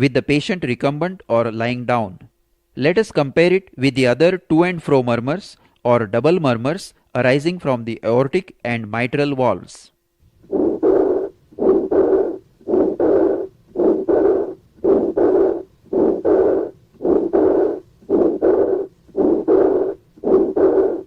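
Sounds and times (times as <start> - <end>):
heart murmur through stethoscope: 10.4 - 21.0.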